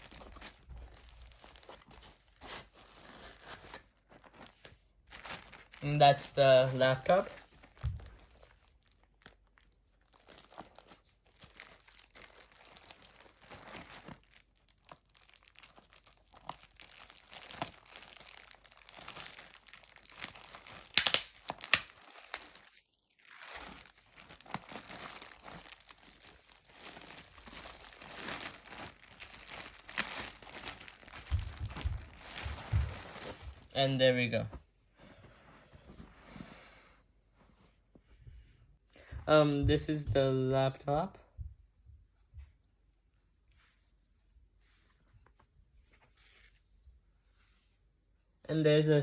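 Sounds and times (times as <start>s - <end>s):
packaging crinkling and rustling: 0.0s - 34.5s.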